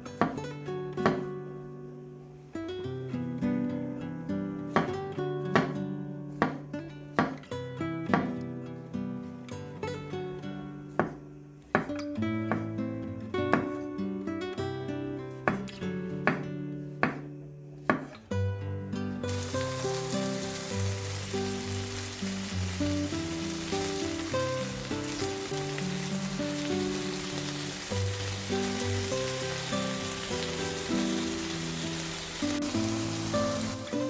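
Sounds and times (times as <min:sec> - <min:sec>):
background music: 0:19.3 - 0:34.0
meat sizzling in oil: 0:19.3 - 0:34.0.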